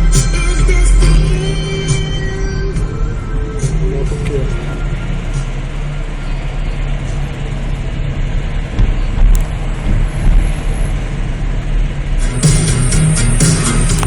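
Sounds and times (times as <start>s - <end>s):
music: 0.0s - 5.7s, 12.2s - 14.0s
motor vehicle engine rumble: 0.0s - 14.0s.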